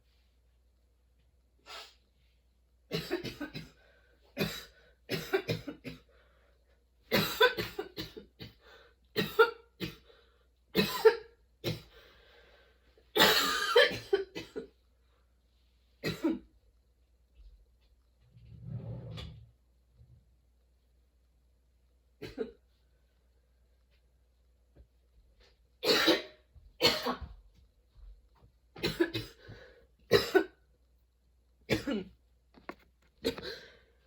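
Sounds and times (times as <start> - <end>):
woman coughing: 2.9 - 3.8, 4.4 - 6.0, 7.1 - 8.6, 9.2 - 10.0, 10.8 - 11.9, 13.2 - 14.7, 16.0 - 16.4, 25.8 - 27.3, 28.8 - 29.4, 30.1 - 30.6, 31.7 - 32.1, 33.2 - 33.7.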